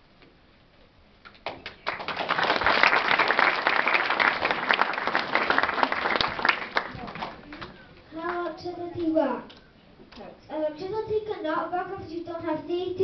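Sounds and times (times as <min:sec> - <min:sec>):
audience applauding: 0:01.4 - 0:08.4.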